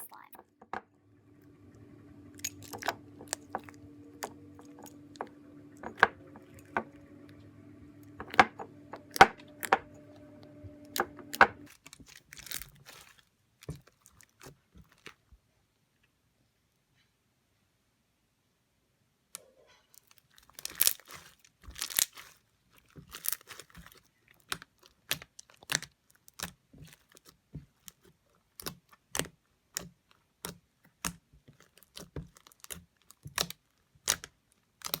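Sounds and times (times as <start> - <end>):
crunchy slime being squeezed: 20.4 - 27.2.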